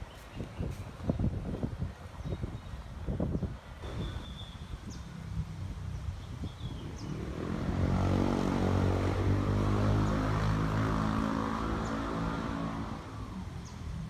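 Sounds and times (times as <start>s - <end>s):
engine passing by: 6.8s - 14.0s.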